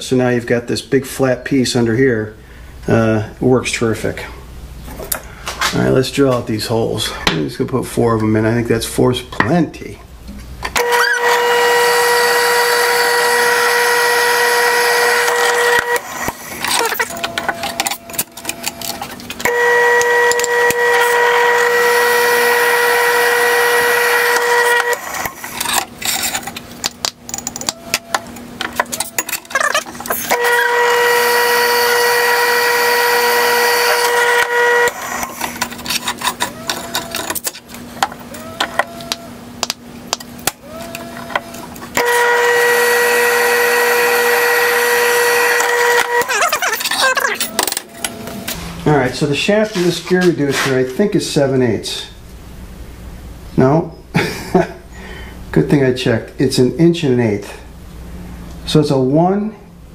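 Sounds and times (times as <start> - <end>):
drill press bit squealing: 10.8 - 26.6, 27.3 - 39.4, 40.5 - 48.6.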